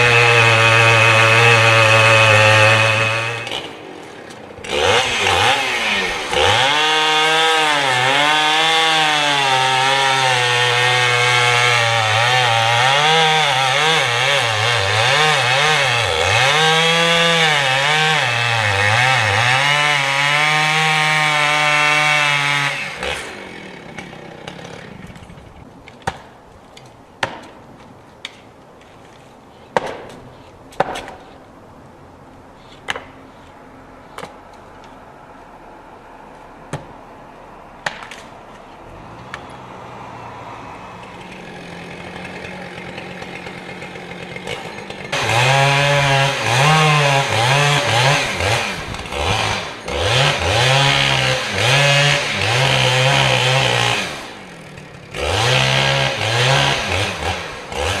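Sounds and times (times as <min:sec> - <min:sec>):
chainsaw cutting wood: 0:00.0 - 0:26.4, 0:37.8 - 0:58.0
sharp knocks: 0:29.8 - 0:31.3.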